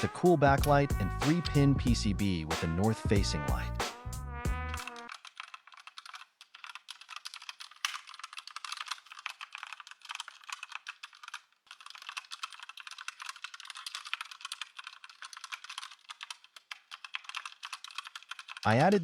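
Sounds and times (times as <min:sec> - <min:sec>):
mechanical keyboard typing: 0:04.7 - 0:19.0.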